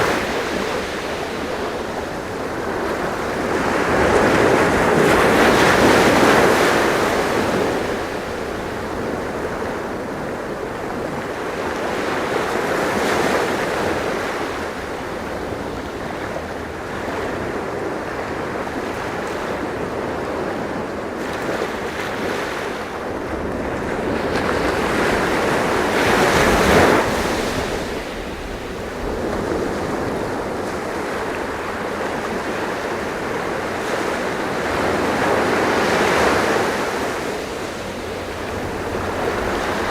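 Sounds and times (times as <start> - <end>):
sea waves surf: 0.0 - 39.9.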